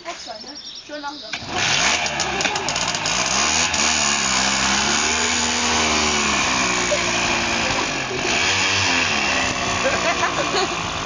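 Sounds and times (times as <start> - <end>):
vehicle engine running: 1.4 - 11.0
wheelie bins rattling on pavement: 1.5 - 8.4.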